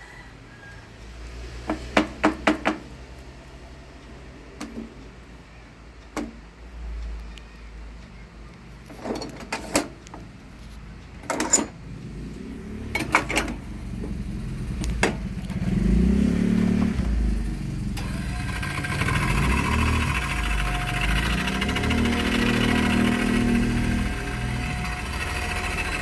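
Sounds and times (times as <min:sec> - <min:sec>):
low machine hum: 0:11.9 - 0:26.0.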